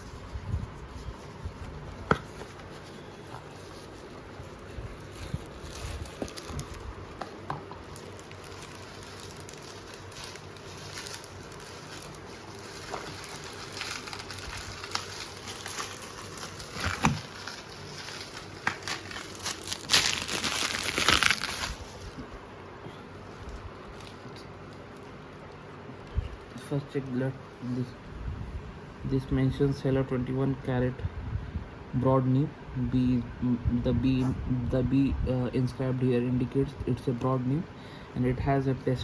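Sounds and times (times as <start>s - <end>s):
packaging crinkling: 1.0s - 22.3s.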